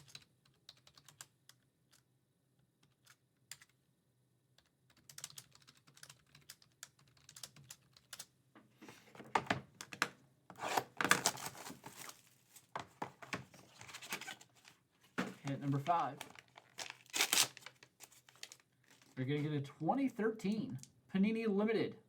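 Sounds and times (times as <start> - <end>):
typing on computer keyboard: 0.0 - 2.0, 2.8 - 3.8, 4.6 - 8.3.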